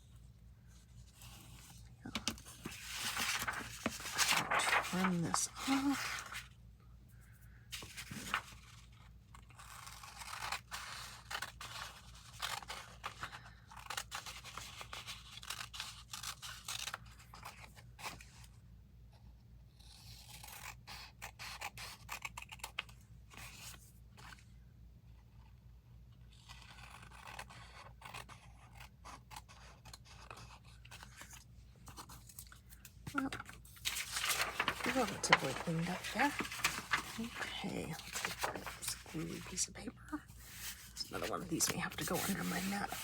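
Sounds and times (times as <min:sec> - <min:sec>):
faint low hum: 0:00.0 - 0:14.3
paper scraping and rustling: 0:00.9 - 0:06.5, 0:07.7 - 0:13.3, 0:30.3 - 0:43.0.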